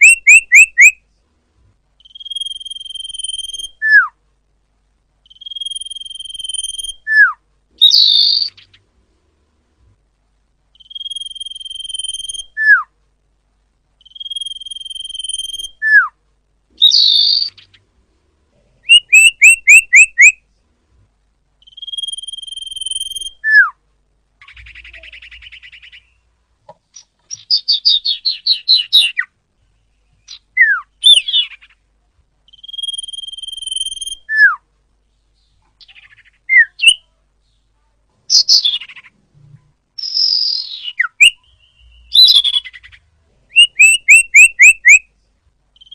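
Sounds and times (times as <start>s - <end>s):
songbird singing: 0.0s - 1.2s, 1.8s - 4.2s, 5.2s - 9.0s, 10.7s - 13.0s, 13.9s - 18.0s, 18.6s - 20.6s, 21.5s - 23.8s, 24.4s - 45.9s.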